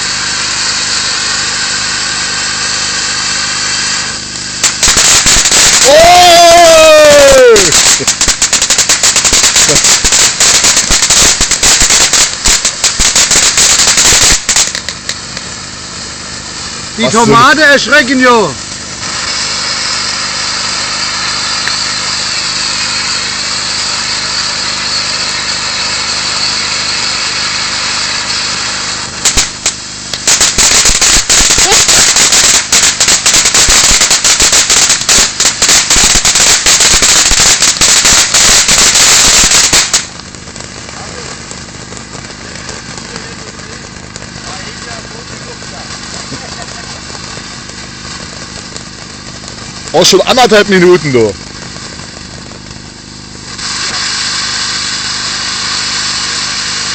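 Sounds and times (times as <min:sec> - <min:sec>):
firework crackling and banging: 0:00.0 - 0:56.9
food sizzling in hot oil: 0:00.0 - 0:56.9.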